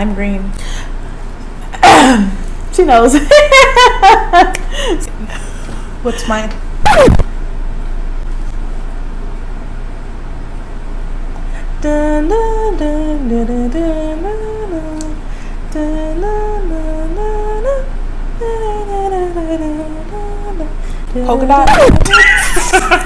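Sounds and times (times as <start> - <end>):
steady low background hum: 0.0 - 23.0
woman humming a tune: 11.8 - 22.5.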